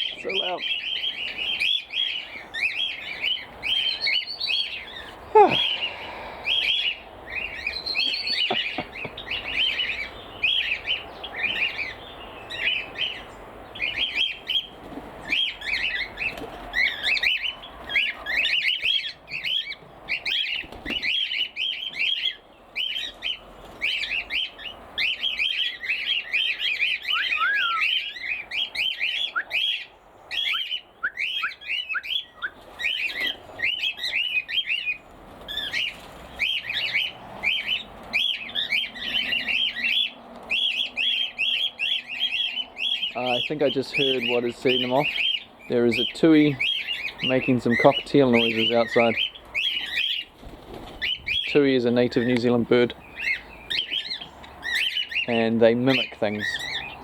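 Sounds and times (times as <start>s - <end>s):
cockatiels squawking: 6.4s - 14.7s, 15.3s - 50.4s, 51.0s - 57.0s.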